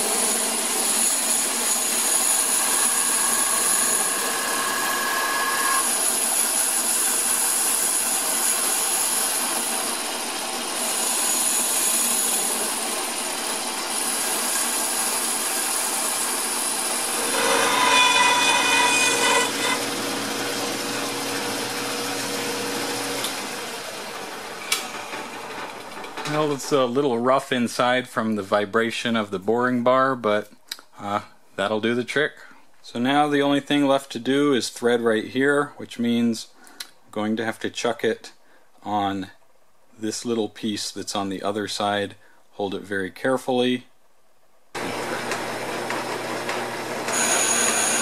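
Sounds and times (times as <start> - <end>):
metal lathe cutting aluminum: 0.0 - 26.8, 44.8 - 48.0.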